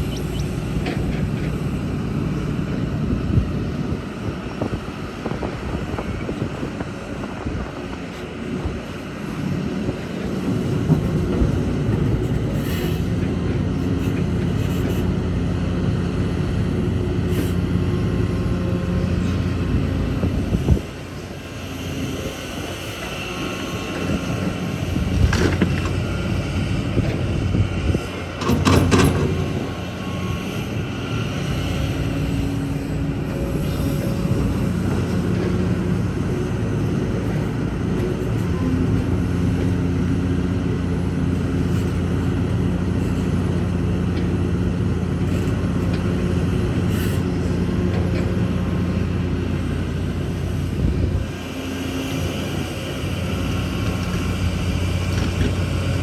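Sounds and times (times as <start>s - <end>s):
excavator diesel engine: 0.0s - 56.0s.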